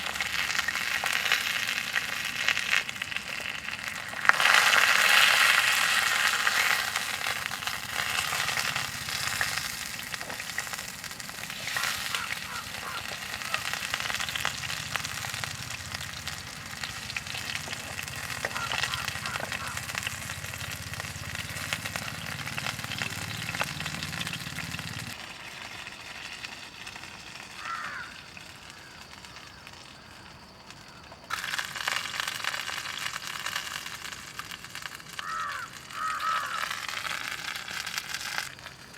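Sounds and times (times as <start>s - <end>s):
food sizzling in a pan: 0.0s - 30.5s, 31.3s - 38.9s
camp stove humming: 0.0s - 38.9s
crow cawing: 11.5s - 24.7s, 27.5s - 30.3s, 35.1s - 37.7s.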